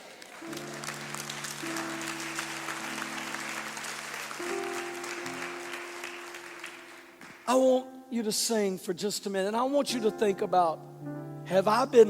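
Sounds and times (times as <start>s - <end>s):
congregation applauding: 0.0s - 7.7s
soft music of held chords: 7.5s - 12.0s.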